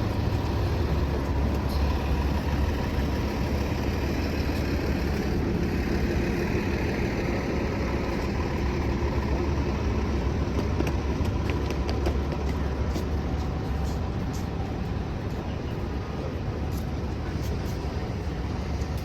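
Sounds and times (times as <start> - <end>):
vehicle engines rumbling: 0.0 - 19.0.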